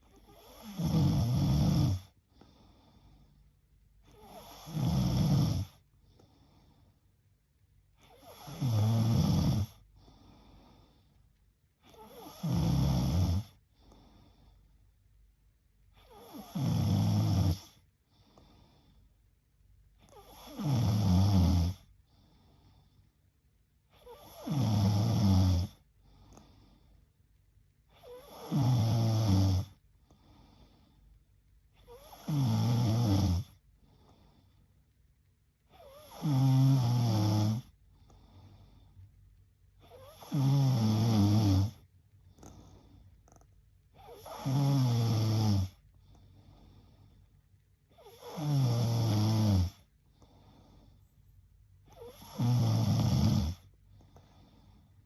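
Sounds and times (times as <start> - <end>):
faint breaths: 0.0 - 16.7, 17.5 - 20.8, 21.7 - 24.6, 25.6 - 28.6, 29.6 - 32.5, 33.4 - 55.0
woman snoring: 0.1 - 2.2, 4.0 - 5.8, 8.0 - 9.8, 11.8 - 13.6, 16.0 - 17.8, 20.0 - 21.9, 24.0 - 25.8, 27.9 - 29.8, 31.8 - 33.6, 35.7 - 37.8, 39.8 - 41.8, 43.3 - 45.8, 48.0 - 49.9, 51.9 - 54.7.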